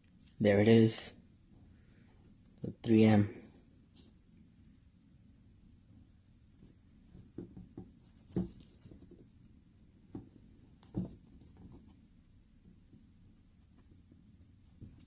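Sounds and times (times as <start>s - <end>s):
sneaker handling knocks and rubs: 7.1s - 9.3s, 10.1s - 12.0s.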